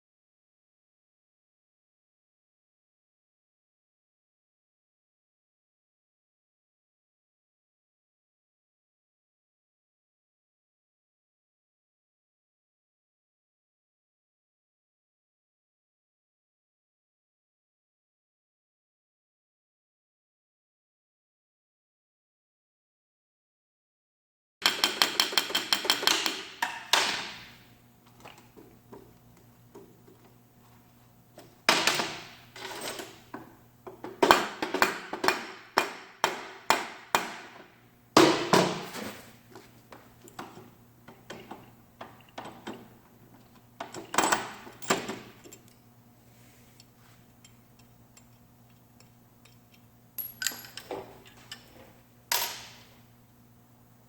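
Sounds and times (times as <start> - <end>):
faint steady hum: 39.2 - 54.0.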